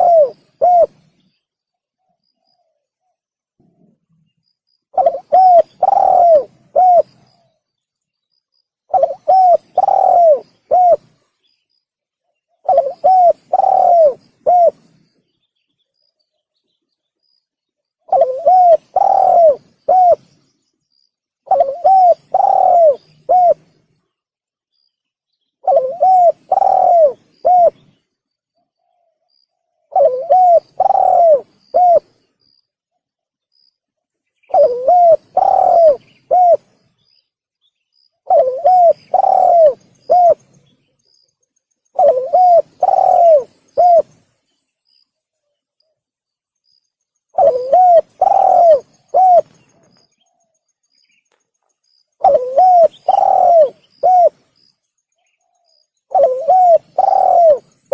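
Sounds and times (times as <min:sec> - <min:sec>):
dove cooing: 0:00.0 - 0:01.1, 0:04.9 - 0:07.6, 0:08.9 - 0:11.2, 0:12.5 - 0:15.0, 0:18.0 - 0:20.4, 0:21.4 - 0:23.8, 0:25.6 - 0:28.0, 0:29.8 - 0:32.2, 0:34.5 - 0:36.8, 0:38.2 - 0:40.5, 0:41.9 - 0:44.2, 0:47.3 - 0:50.4, 0:52.2 - 0:54.5, 0:55.4 - 0:57.9.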